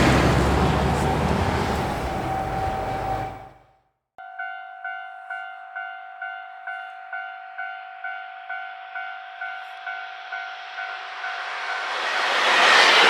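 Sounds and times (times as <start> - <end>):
level crossing warning bell: 0.0 - 3.6, 4.2 - 11.0.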